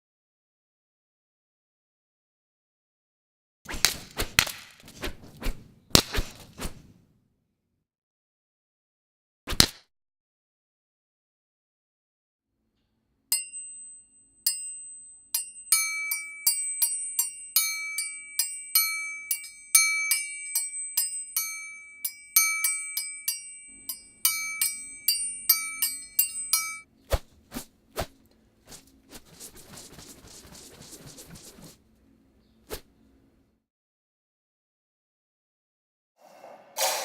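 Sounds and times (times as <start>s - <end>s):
glockenspiel-like mallet music: 13.3s - 26.9s.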